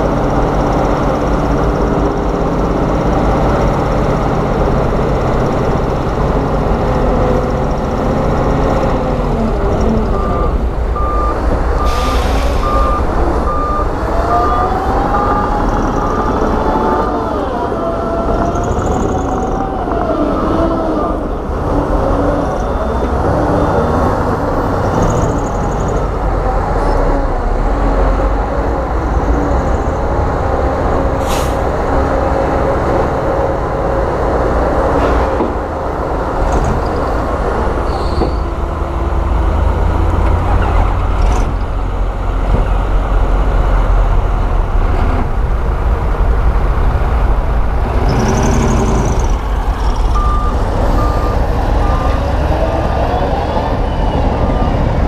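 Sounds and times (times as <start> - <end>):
diesel engine rumbling: 0.0 - 55.0
high squeals: 37.9 - 38.8.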